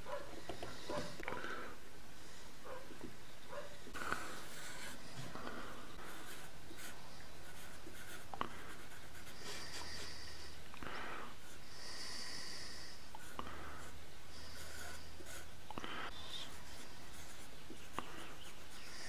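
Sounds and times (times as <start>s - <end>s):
scratchy strokes rubbing on surface: 4.1s - 5.4s, 6.0s - 10.3s, 13.2s - 15.5s, 16.1s - 19.0s.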